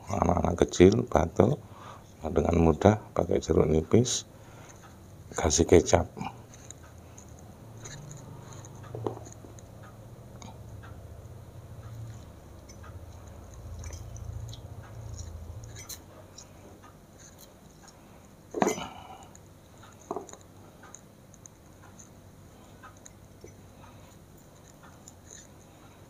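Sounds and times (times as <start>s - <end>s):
low steady hum: 0.0s - 26.0s
glassware and utensils clinking: 18.6s - 19.0s.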